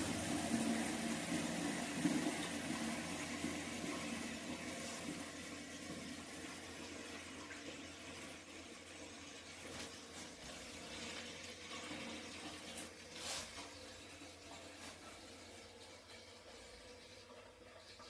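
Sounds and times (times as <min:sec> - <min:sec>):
toilet flushing: 0:00.0 - 0:18.0.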